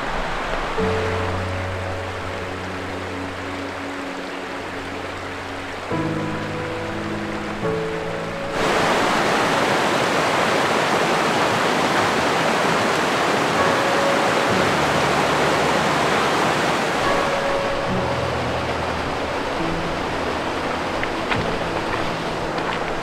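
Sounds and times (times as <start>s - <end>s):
fast-flowing creek rushing: 0.0s - 23.0s.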